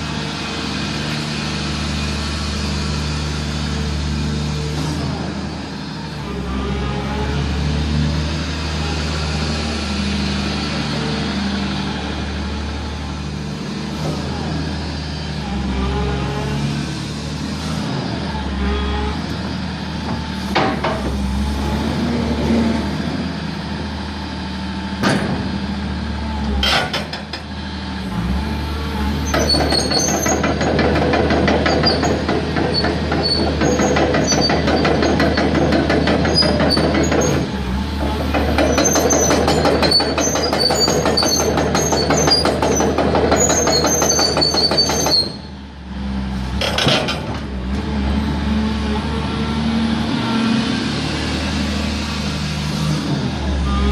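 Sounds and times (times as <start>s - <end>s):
excavator diesel engine running: 0.0s - 53.9s
sharp metallic knocks: 29.3s - 37.5s, 38.1s - 45.4s.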